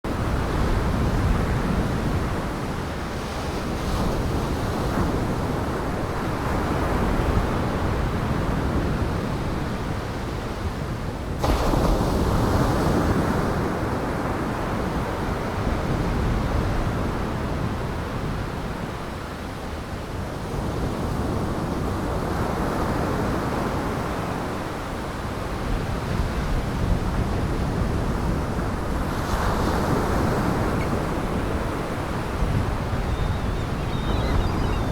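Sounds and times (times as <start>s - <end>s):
gale-force wind: 25.8s - 34.9s
heavy surf: 25.9s - 34.9s.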